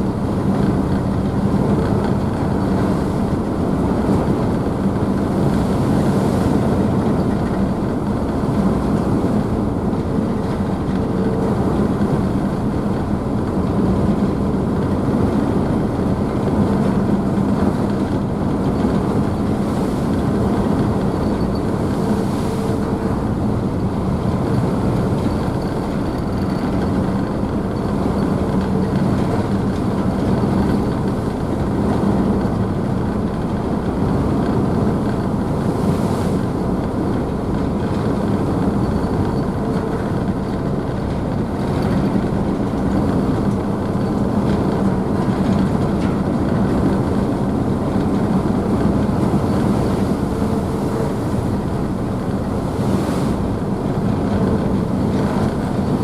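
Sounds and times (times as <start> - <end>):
ship engines humming: 0.0 - 45.6, 46.2 - 56.0.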